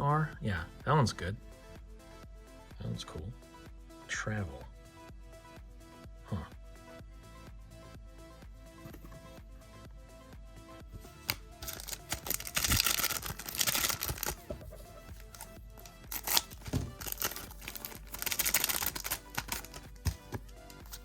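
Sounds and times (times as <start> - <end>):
background music: 0.0 - 21.0
cards clicking when handled: 11.2 - 14.6, 15.2 - 21.0
foil wrappers crinkling and tearing: 11.3 - 14.5, 15.1 - 21.0.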